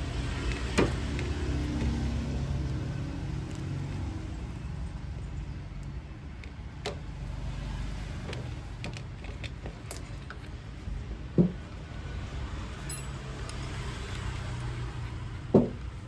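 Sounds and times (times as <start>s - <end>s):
tool handling clicks and knocks: 0.4s - 2.0s, 8.2s - 10.6s, 11.3s - 11.8s, 15.5s - 16.0s.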